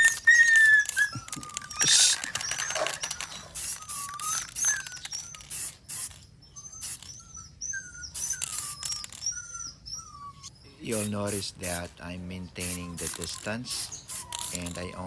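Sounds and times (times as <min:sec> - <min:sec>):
spray can hissing bursts: 0:01.8 - 0:06.2, 0:06.8 - 0:07.1, 0:08.2 - 0:09.0, 0:10.9 - 0:11.9, 0:12.6 - 0:14.9.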